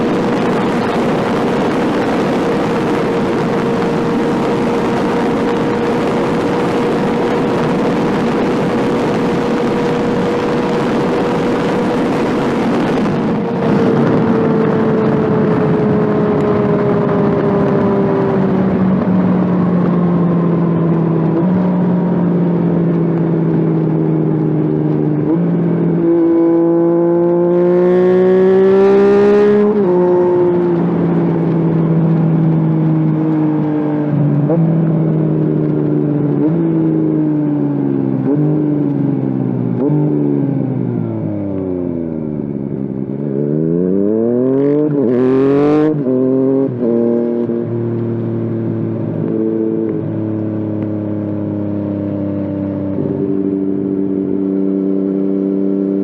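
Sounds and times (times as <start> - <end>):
wind rush: 0.0 - 22.2
motorcycle engine revving: 0.0 - 56.0.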